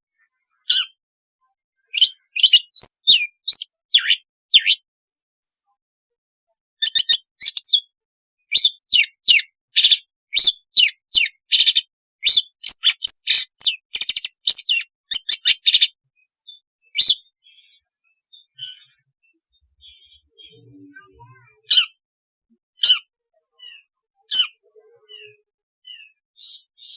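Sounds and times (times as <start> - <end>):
faint bird chirps: 0.1 - 4.9, 6.8 - 22.0, 22.8 - 26.9
bird singing harsh notes: 1.9 - 4.8, 11.2 - 22.0, 22.8 - 26.9.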